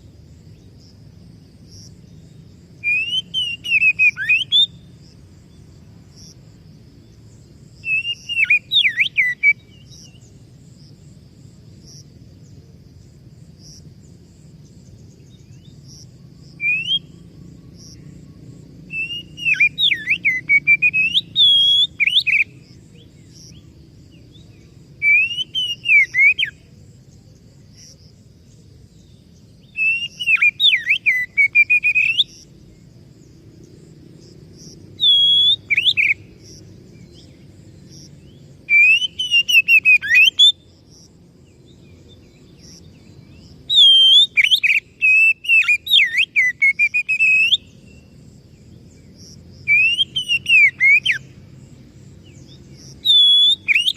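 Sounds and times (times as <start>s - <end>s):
bird singing whistled phrases: 2.8s - 4.8s, 7.8s - 10.2s, 16.6s - 17.2s, 18.9s - 22.6s, 25.0s - 26.6s, 29.6s - 32.4s, 35.0s - 36.3s, 38.7s - 40.6s, 43.7s - 48.1s, 49.7s - 51.2s, 53.0s - 53.9s.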